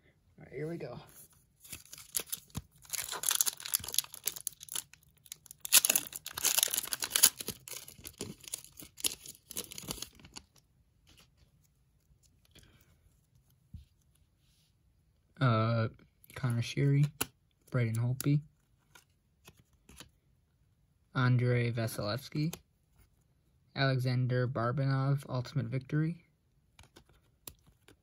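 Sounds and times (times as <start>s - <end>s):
plastic wrapping tearing and crinkling: 1.6s - 10.5s.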